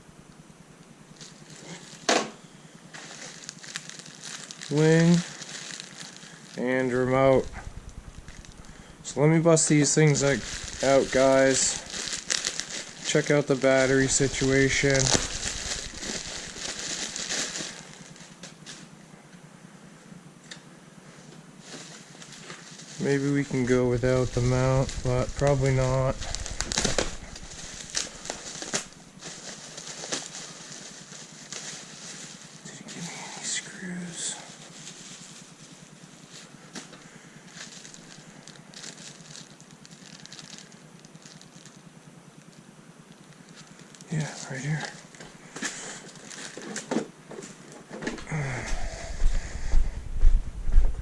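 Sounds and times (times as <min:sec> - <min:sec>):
plastic packaging crinkling: 0:01.0 - 0:18.9, 0:21.6 - 0:33.2, 0:34.3 - 0:49.0
hands rummaging through parts: 0:09.8 - 0:18.9.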